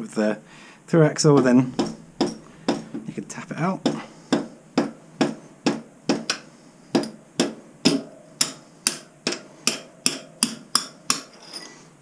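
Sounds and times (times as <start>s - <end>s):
wooden mallet striking metal punch: 1.4s - 3.0s, 3.8s - 11.3s.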